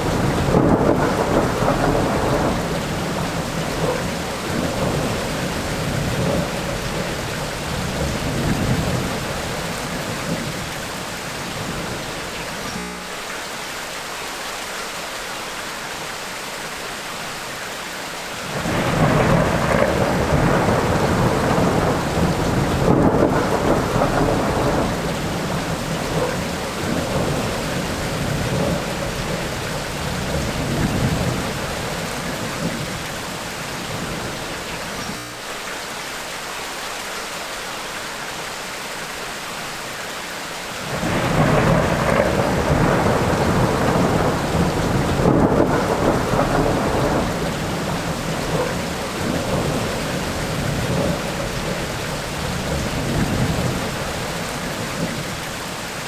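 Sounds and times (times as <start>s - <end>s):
rolling thunder: 0.0s - 12.8s, 18.5s - 35.2s, 40.8s - 56.0s
steady rain: 0.0s - 56.0s.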